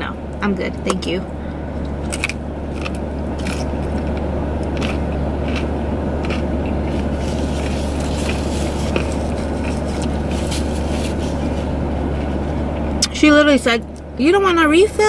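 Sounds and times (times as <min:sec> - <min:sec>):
car cabin hum: 0:00.0 - 0:15.0
person chewing food: 0:01.8 - 0:12.9.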